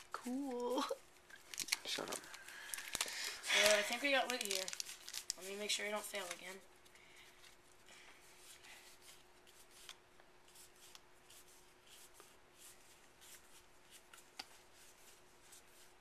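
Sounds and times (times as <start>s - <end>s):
low steady hum: 0.0s - 16.0s
cards rustling: 0.2s - 7.6s.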